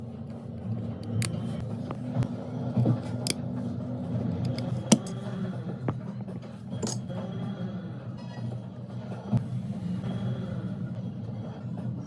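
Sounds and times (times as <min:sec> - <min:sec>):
small tools tapping a smartphone: 0:04.5 - 0:05.2.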